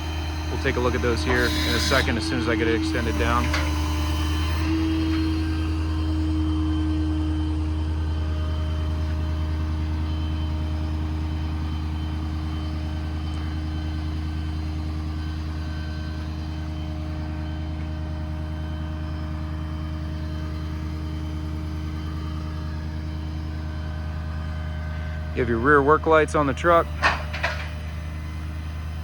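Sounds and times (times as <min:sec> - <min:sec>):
higher steady tones: 0:00.0 - 0:11.9
diesel engine low hum: 0:00.0 - 0:29.0.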